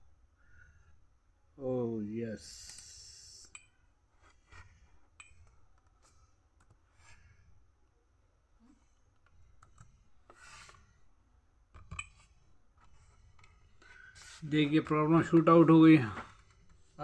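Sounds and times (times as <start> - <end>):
laptop keys and touchpad clicks: 11.8 - 12.3.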